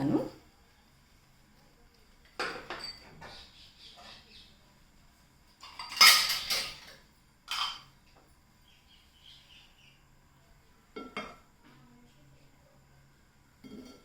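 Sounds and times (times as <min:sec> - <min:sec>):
utensils clinking against pots: 0:02.3 - 0:03.4, 0:05.6 - 0:08.0.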